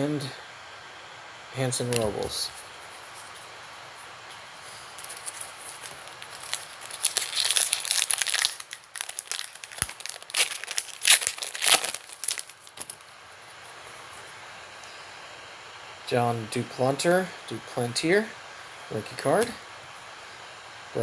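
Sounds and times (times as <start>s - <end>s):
plastic wrapper crinkling: 5.0s - 13.1s.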